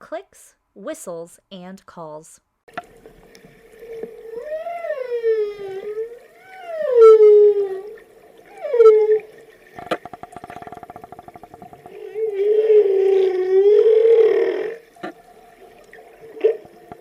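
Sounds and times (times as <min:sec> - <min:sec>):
whale clicks: 0:02.7 - 0:17.0
whale calls: 0:03.8 - 0:17.0.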